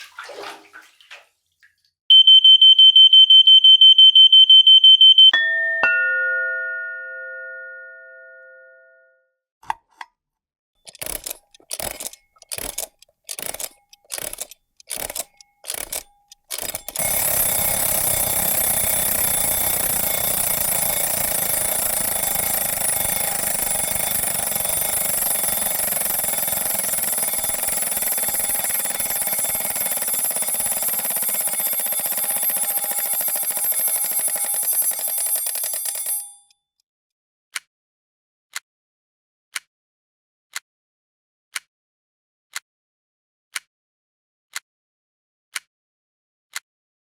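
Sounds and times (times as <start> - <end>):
two-note doorbell chime: 5.3 - 9.2
clicks: 10.9 - 36.4.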